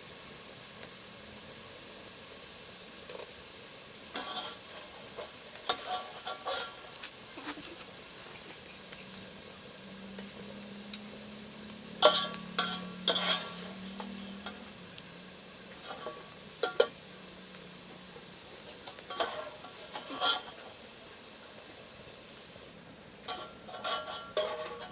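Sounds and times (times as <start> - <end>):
potatoes sizzling in oil: 0.0 - 24.9
metal utensil clanking on pan: 4.1 - 7.6, 11.9 - 14.8, 15.7 - 17.0, 18.6 - 20.9, 23.2 - 24.9.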